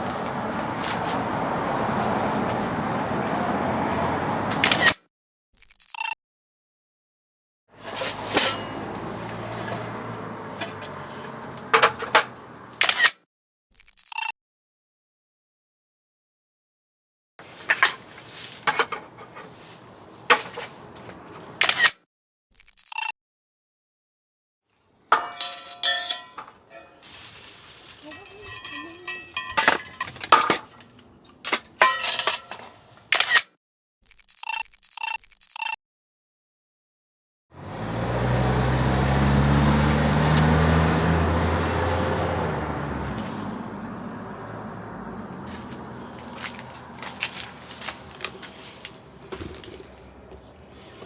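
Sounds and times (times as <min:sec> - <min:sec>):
dishes and cookware clinking: 0:08.4 - 0:10.0, 0:25.2 - 0:27.2, 0:28.0 - 0:32.8
camera shutter click: 0:33.1 - 0:33.4.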